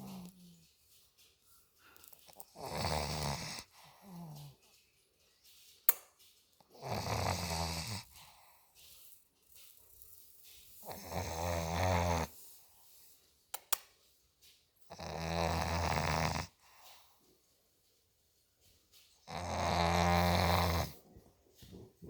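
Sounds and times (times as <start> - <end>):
puppy snoring: 0.0 - 0.6, 2.3 - 4.6, 6.7 - 8.7, 10.7 - 12.5, 14.9 - 17.0, 19.2 - 21.0
quiet breathing: 0.0 - 5.8, 6.7 - 13.4, 15.4 - 17.6.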